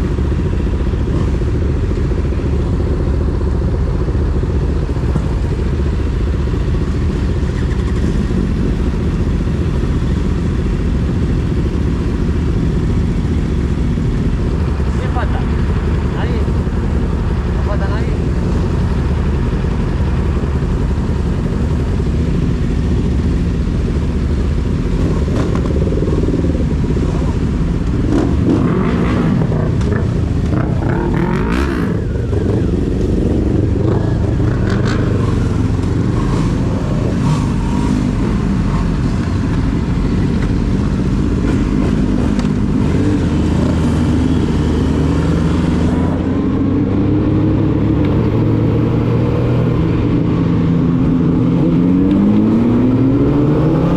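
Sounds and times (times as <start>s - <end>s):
motorcycle engine accelerating: 0.0s - 53.9s.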